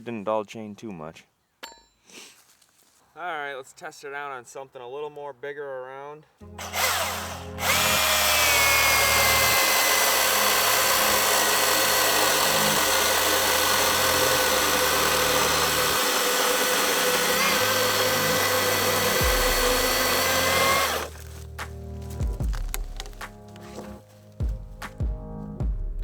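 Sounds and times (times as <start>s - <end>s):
electric chainsaw cutting log: 6.5s - 21.3s, 22.5s - 23.2s.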